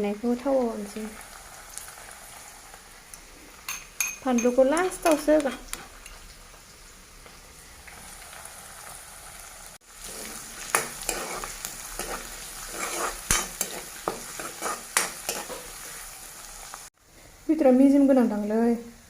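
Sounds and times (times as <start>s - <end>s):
onion frying in oil: 0.0s - 19.0s
utensil scraping pan: 10.0s - 15.7s.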